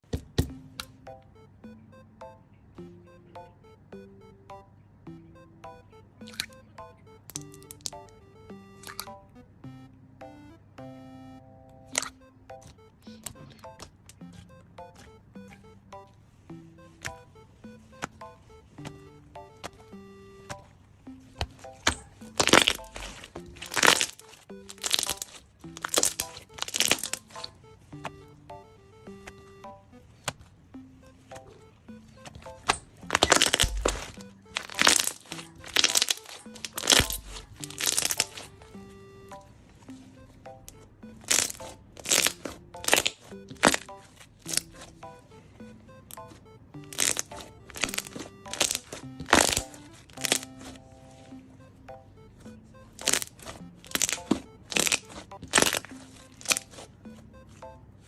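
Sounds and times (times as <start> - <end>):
background music with simple melody: 0.0 - 58.0
slime crackling and squishing: 7.3 - 8.1, 8.8 - 9.1, 20.5 - 28.3, 31.2 - 38.9, 40.0 - 51.5, 52.3 - 57.6.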